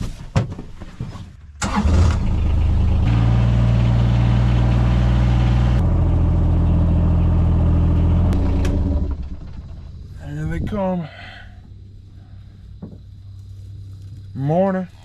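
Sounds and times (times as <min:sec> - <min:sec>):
vehicle engine cranking and running: 0:01.6 - 0:10.3.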